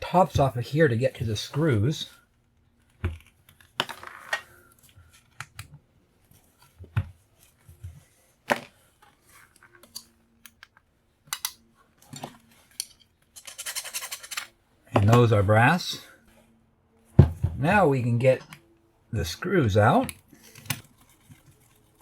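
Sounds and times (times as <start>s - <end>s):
hand tool clicking and scraping on metal: 12.7s - 14.5s.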